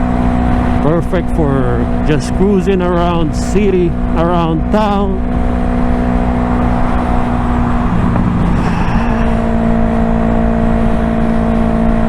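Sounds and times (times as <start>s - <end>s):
motorcycle engine running: 3.9s - 12.0s
wind on microphone: 5.8s - 10.3s.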